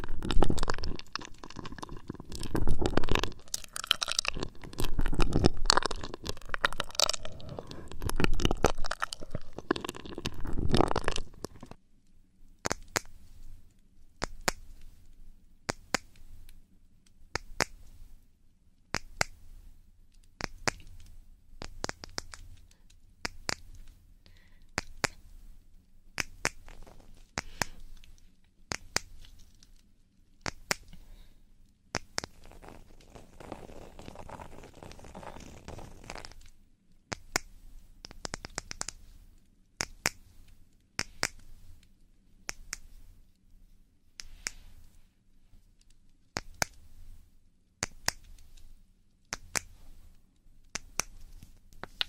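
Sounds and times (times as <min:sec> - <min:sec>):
dense rubbing: 0:00.0 - 0:11.8, 0:32.3 - 0:36.4.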